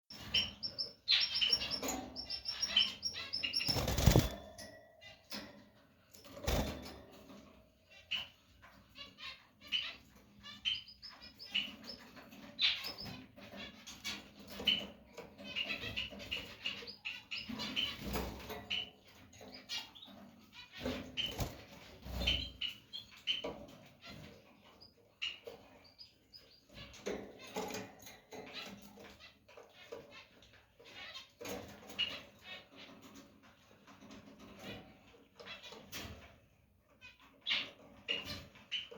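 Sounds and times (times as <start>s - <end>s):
canary chirping: 0.1s - 38.9s
rustling bursts: 3.6s - 4.4s.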